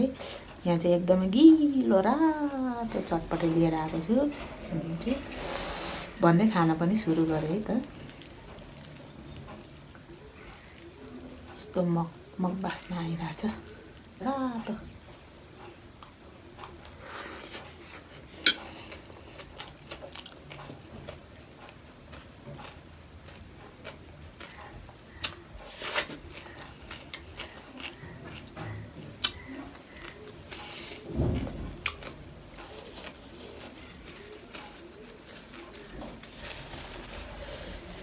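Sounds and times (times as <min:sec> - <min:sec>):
crunching and chewing: 0:03.4 - 0:38.0
low thump: 0:31.2 - 0:31.8.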